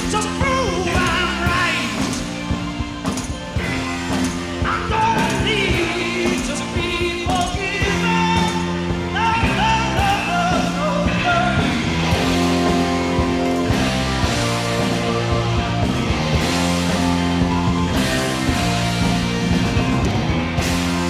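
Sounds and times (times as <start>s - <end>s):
man singing: 0.0s - 2.3s, 4.6s - 16.2s
bass guitar: 0.0s - 21.0s
drums: 0.0s - 21.0s
electric guitar: 0.0s - 21.0s.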